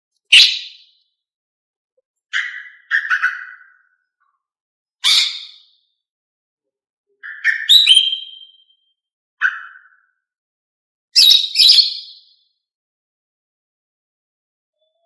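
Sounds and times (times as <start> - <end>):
bird whistle: 0.3 - 0.8, 5.0 - 5.6, 7.2 - 10.0, 11.2 - 12.2
bird chirping calls: 2.3 - 4.1, 5.0 - 5.7, 7.2 - 8.8, 9.4 - 10.1, 11.2 - 12.2.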